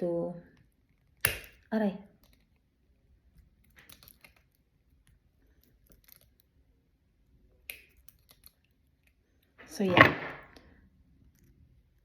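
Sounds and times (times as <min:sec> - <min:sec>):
pliers clicking on metal: 0:01.2 - 0:01.6, 0:03.6 - 0:04.4, 0:07.7 - 0:08.6.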